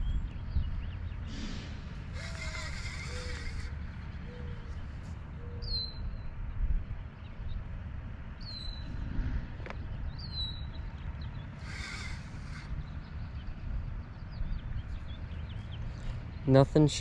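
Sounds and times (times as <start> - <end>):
songbird whistling: 5.4 - 6.2.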